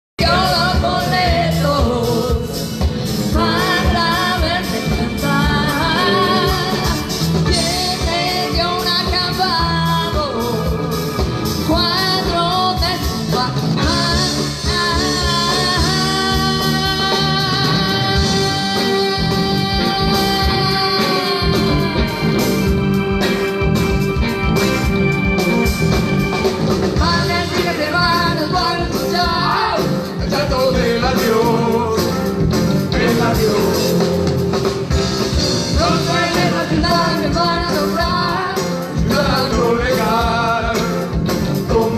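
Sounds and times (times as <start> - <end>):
lead singer: 0.2 - 41.9
live rock band: 0.2 - 41.9.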